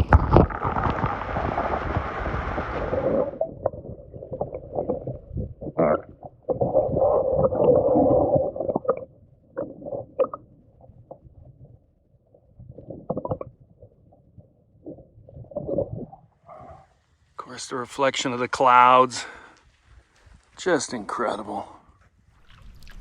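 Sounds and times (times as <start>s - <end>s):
water splashing against hull: 0.0s - 9.1s, 22.3s - 23.0s
kayak paddle strokes: 22.4s - 23.0s.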